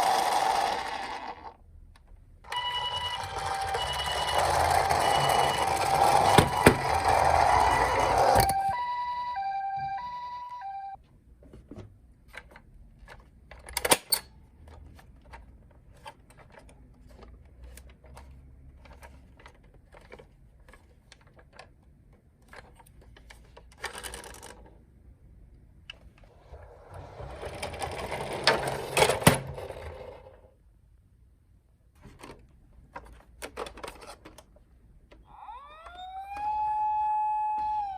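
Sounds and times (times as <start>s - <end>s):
toy car clicking and clattering: 0.0s - 1.6s, 2.5s - 8.7s, 12.4s - 24.8s
small wheels rolling rattle: 26.6s - 30.4s.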